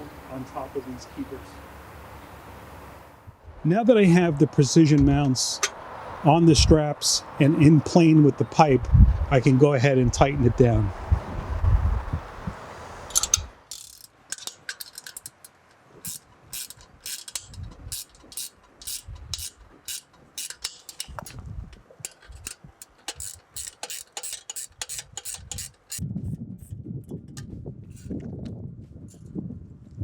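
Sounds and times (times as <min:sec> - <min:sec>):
low handling noise: 0:03.3 - 0:06.8, 0:12.4 - 0:29.3
ratchet wrench clicking: 0:13.1 - 0:26.0, 0:26.6 - 0:28.2.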